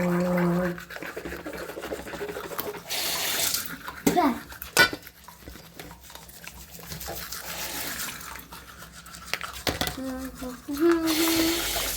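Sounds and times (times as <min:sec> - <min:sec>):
toothbrush scrubbing teeth: 0:00.0 - 0:11.9.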